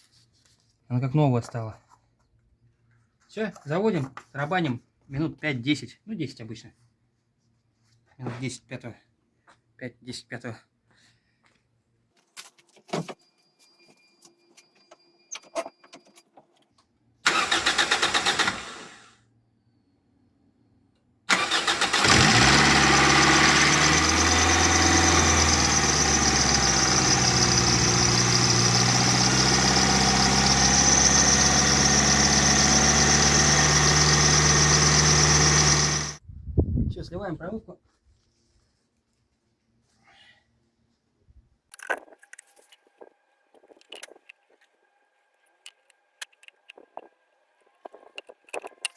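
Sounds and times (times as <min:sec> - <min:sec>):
car engine cranking and idling: 0:17.3 - 0:19.0, 0:21.3 - 0:36.2.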